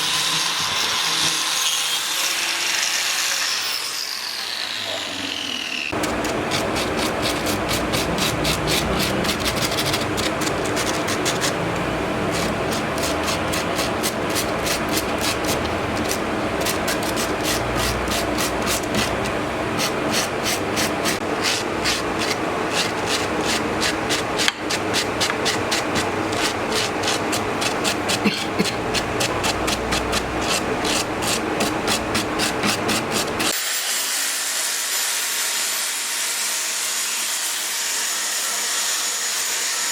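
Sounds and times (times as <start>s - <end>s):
angle grinder motor: 0.0s - 35.0s
disc scraping wood: 5.9s - 33.6s.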